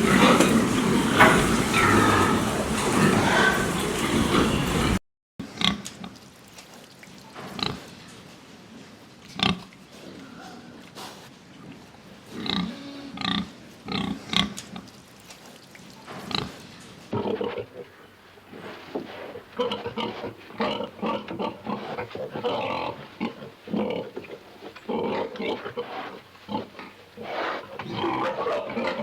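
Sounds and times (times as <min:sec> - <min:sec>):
pig grunting: 0:00.0 - 0:05.8, 0:12.3 - 0:14.6, 0:16.1 - 0:29.0.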